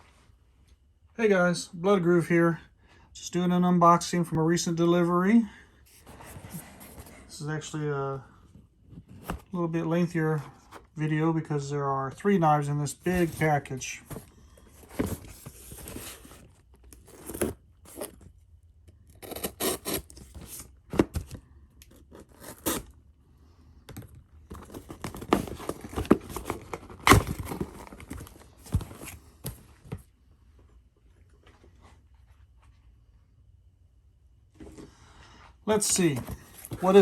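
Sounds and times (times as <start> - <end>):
tape and cardboard tearing: 14.9 - 18.2, 19.1 - 21.3, 21.9 - 23.0.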